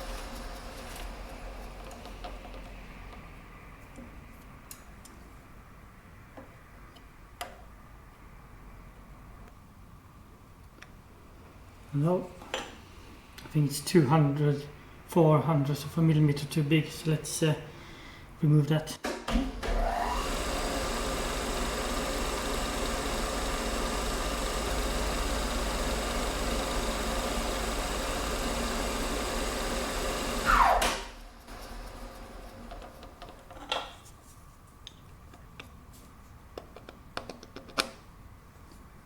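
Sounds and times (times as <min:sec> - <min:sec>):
lathe motor whine: 0:00.0 - 0:02.1, 0:19.6 - 0:33.2.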